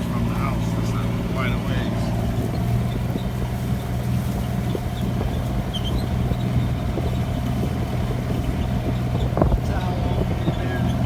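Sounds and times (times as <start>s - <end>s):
vehicle engine humming: 0.0s - 11.0s.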